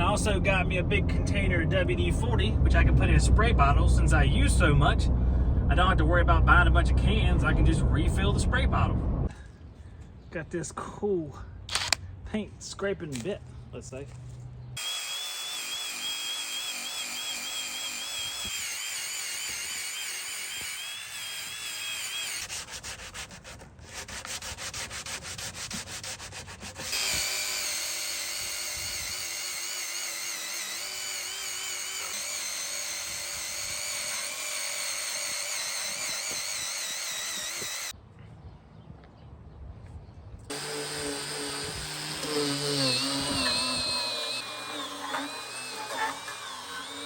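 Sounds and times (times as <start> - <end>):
grinder motor whine: 14.8 - 22.4, 26.9 - 37.9, 40.5 - 47.0
disc scraping paint off wood: 44.5 - 46.5.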